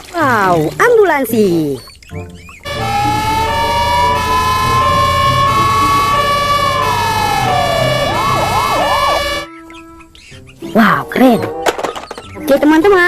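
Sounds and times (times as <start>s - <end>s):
ambulance siren wailing and yelping: 2.6s - 9.5s.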